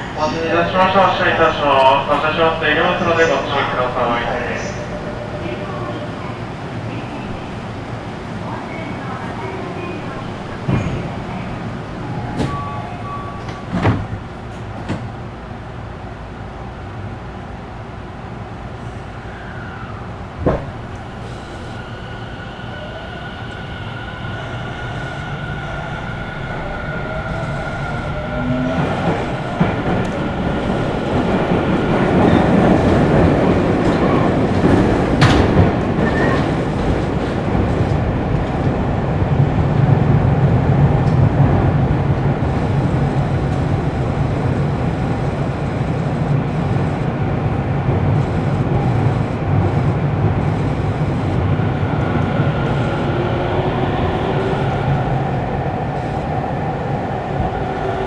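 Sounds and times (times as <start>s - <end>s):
train wheel and rail rumble: 0.0s - 58.0s
train motor whine: 19.4s - 58.0s.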